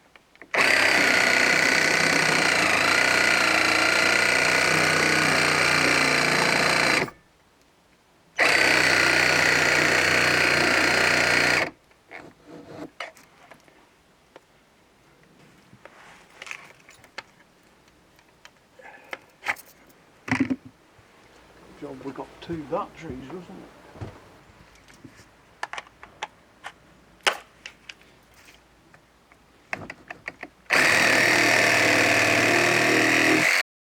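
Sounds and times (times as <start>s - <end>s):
reciprocating saw whining: 0.6s - 7.2s, 30.7s - 33.6s.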